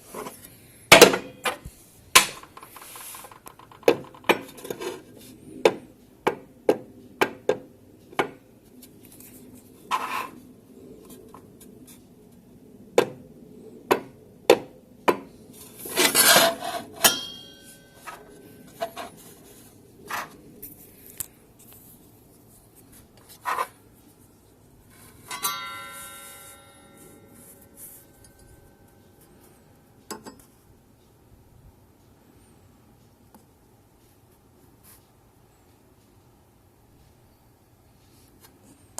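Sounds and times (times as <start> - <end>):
scraping rubs: 15.6 - 17.0, 18.0 - 24.3.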